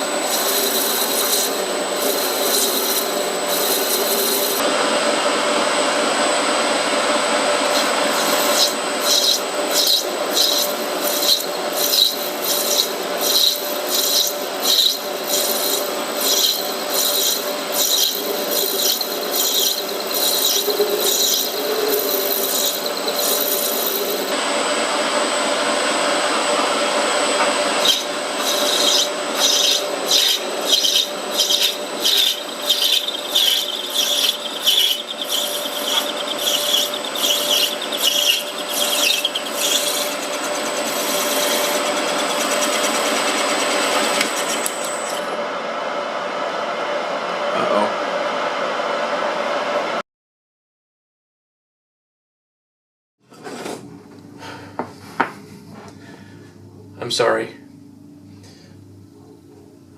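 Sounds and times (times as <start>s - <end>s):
metal scraping strokes: 0.0s - 4.6s, 7.7s - 24.4s, 27.4s - 45.3s
metal lathe motor hum: 0.0s - 49.9s.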